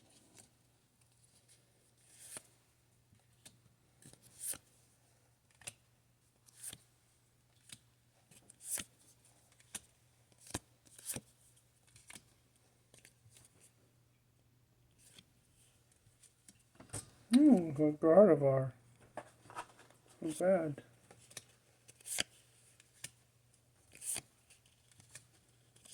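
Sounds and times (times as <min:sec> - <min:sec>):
trading cards flipped through: 0:11.9 - 0:12.2, 0:23.9 - 0:25.2.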